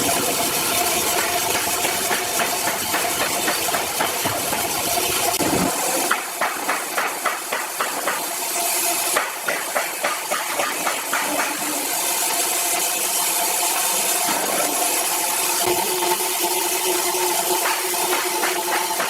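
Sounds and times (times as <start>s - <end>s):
machine running: 0.0s - 19.0s
sharp knocks: 6.1s - 8.3s, 9.2s - 11.7s.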